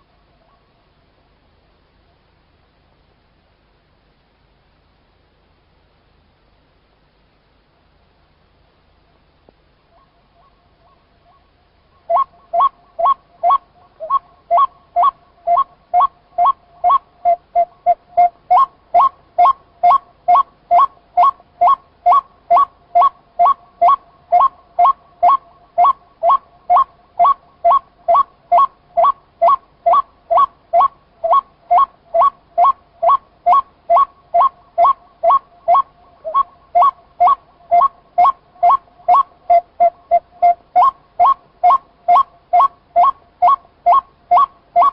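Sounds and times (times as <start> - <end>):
bird calling two-pitched notes: 12.0 - 44.9.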